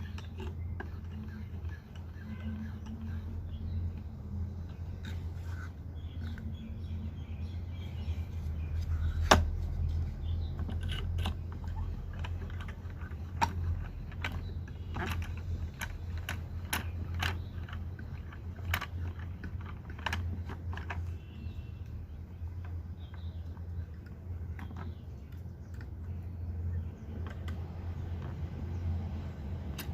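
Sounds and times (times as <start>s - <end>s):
light clicks and knocks: 0.0s - 29.9s.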